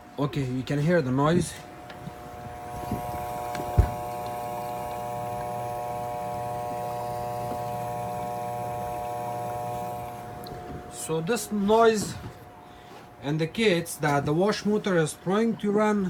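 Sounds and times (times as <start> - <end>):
dishwasher motor humming: 1.0 - 13.0.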